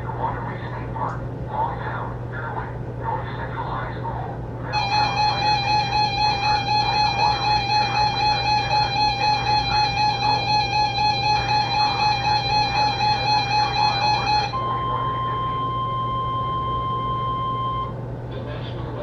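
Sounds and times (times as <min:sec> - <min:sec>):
high steady alarm tone: 0:04.7 - 0:18.0
pulsing harsh electronic alert tone: 0:04.7 - 0:18.0.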